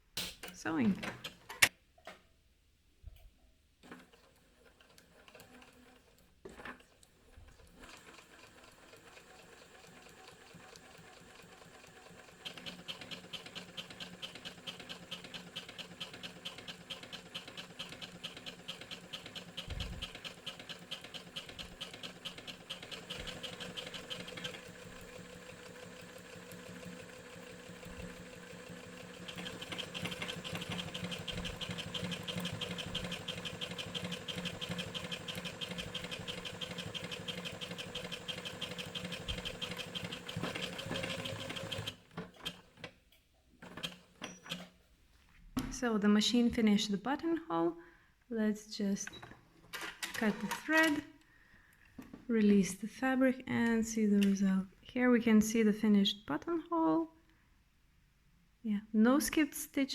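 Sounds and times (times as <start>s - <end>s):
sewing machine clicks: 3.8s - 43.0s, 43.6s - 44.8s
sewing machine stitching: 3.8s - 43.0s, 43.6s - 44.8s.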